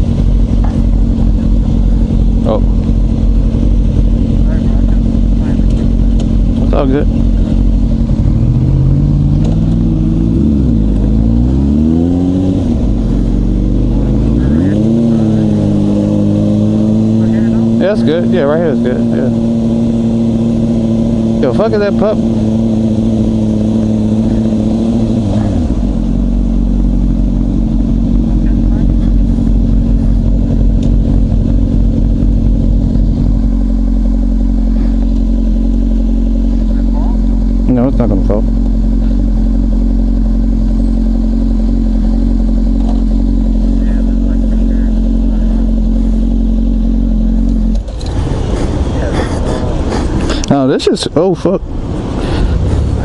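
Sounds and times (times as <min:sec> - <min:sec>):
motorcycle engine accelerating: 0:00.0 - 0:53.0.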